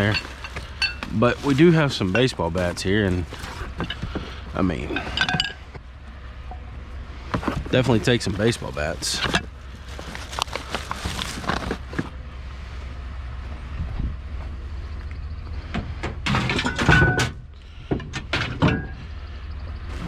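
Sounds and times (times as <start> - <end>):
baseball bats knocking and clattering: 0.0 - 5.9, 7.3 - 12.1.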